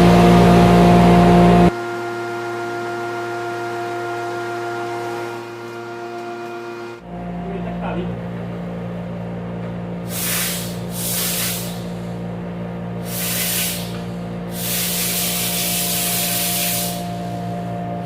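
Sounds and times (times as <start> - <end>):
steady motor hum: 0.0 - 18.0
sandblasting hiss: 10.1 - 11.9, 13.0 - 17.5.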